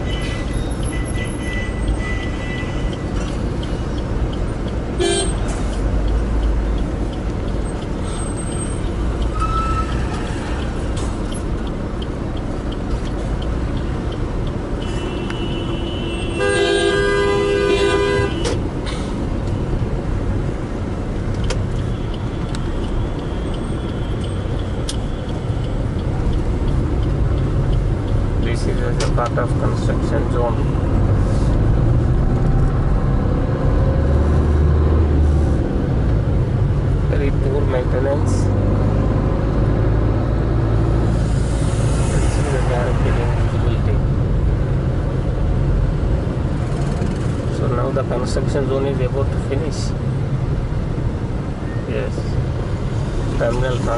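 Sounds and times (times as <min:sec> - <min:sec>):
vehicle horns: 0:00.0 - 0:03.1, 0:05.0 - 0:05.5, 0:09.3 - 0:10.6, 0:14.8 - 0:18.6
road traffic noise: 0:00.0 - 0:53.9.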